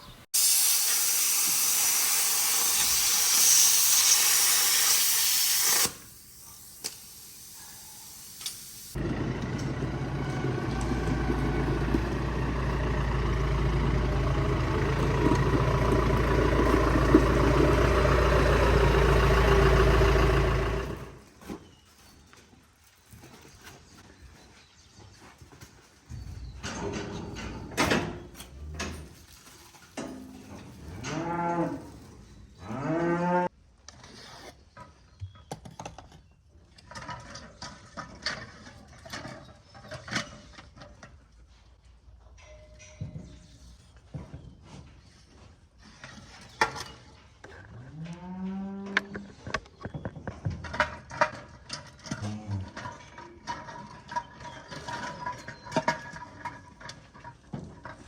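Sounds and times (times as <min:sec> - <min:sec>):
clanks and rattles: 0:25.6 - 0:31.2, 0:48.8 - 0:58.0
cows mooing: 0:31.0 - 0:31.9, 0:32.6 - 0:33.5.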